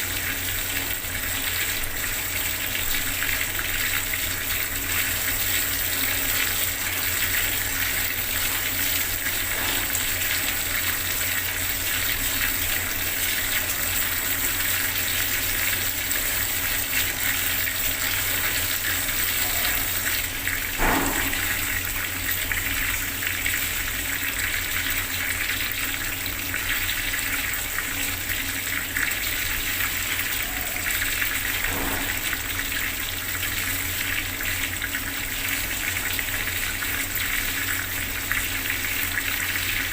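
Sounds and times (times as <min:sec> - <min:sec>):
water tap running into water: 0:00.0 - 0:39.9
loud water splash: 0:20.7 - 0:22.1, 0:31.5 - 0:32.7.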